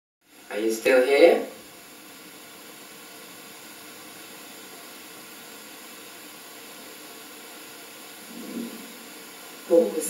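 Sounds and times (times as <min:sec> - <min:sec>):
steady background hiss: 0:00.2 - 0:10.0.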